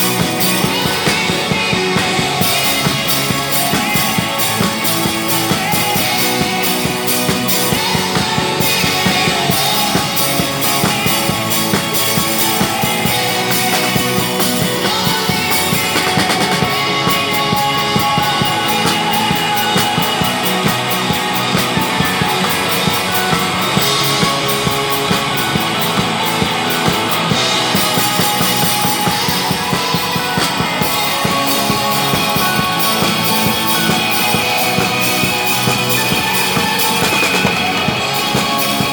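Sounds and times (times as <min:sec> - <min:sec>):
drum kit playing rock: 0:00.0 - 0:38.9
guitar: 0:00.0 - 0:38.9.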